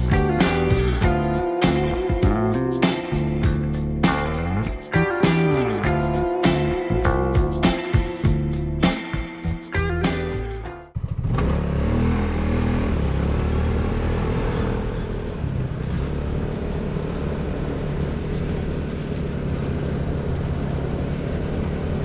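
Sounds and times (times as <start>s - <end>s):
background music: 0.0s - 10.9s.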